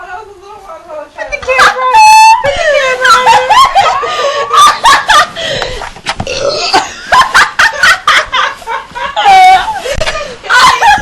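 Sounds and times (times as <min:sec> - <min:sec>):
girls laughing: 0:02.0 - 0:05.8, 0:06.6 - 0:11.0
burps: 0:06.2 - 0:06.9.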